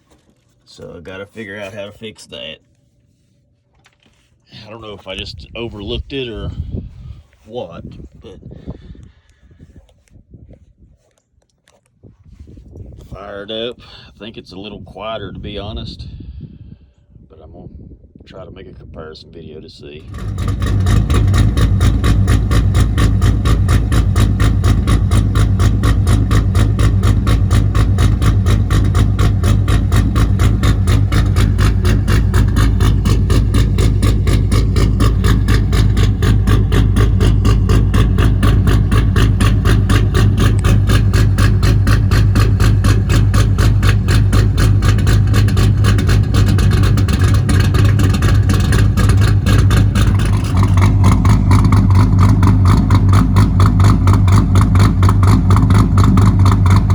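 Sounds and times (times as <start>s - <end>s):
car engine idling: 20.0s - 56.9s.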